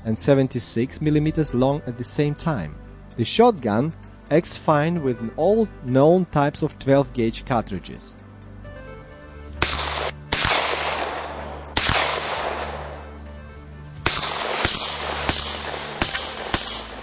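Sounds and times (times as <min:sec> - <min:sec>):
background music with low tone: 0:00.0 - 0:17.0
shotgun shots echoing: 0:09.6 - 0:13.2, 0:14.0 - 0:17.0.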